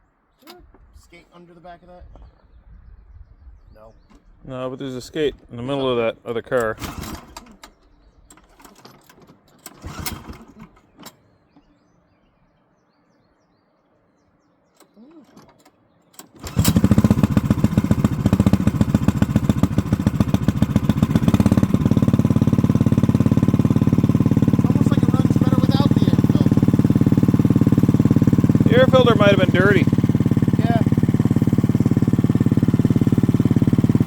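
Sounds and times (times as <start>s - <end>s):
engine starting and running: 6.4s - 11.8s, 14.8s - 34.0s.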